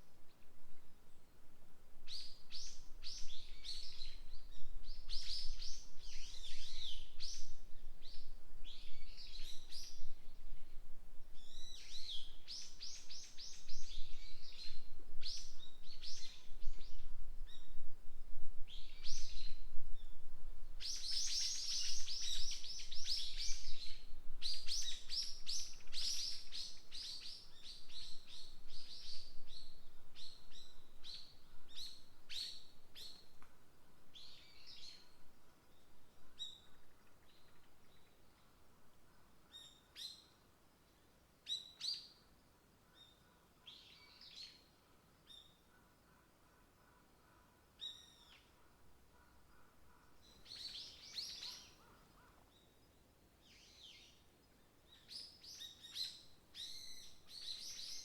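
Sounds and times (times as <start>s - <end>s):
songbirds chirping and trilling: 34.1s - 46.2s, 46.9s - 58.0s.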